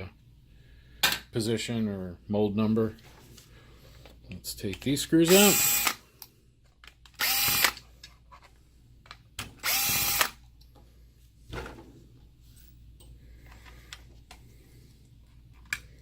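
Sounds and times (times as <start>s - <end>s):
power drill motor whine: 5.3s - 6.0s, 7.2s - 7.8s, 9.6s - 10.4s.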